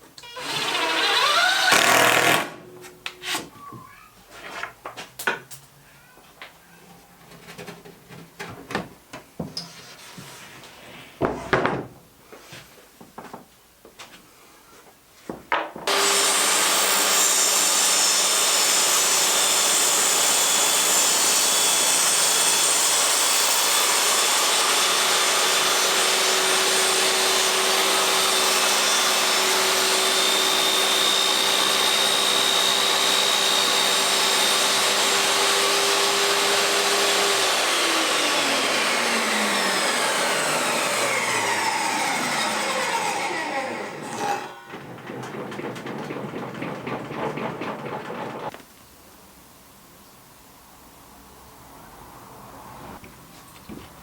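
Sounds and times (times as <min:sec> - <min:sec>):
table saw running: 0:00.4 - 0:02.7, 0:15.9 - 0:48.6
saw blade spinning down: 0:22.6 - 0:46.0.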